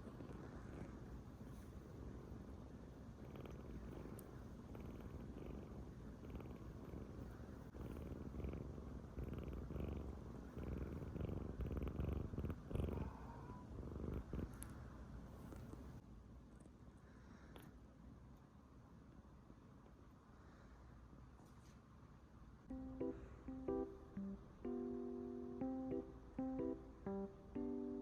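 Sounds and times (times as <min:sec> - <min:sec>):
kitten purring: 0:00.0 - 0:16.0.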